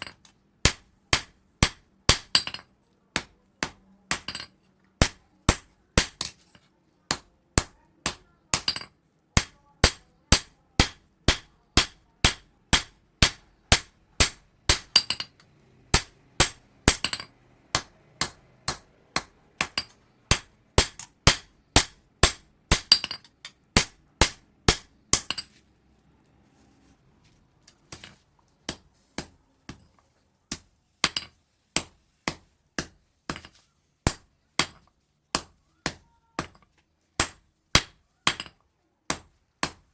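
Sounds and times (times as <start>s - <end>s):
hammer striking steel on anvil: 0.0s - 2.6s, 7.1s - 25.5s.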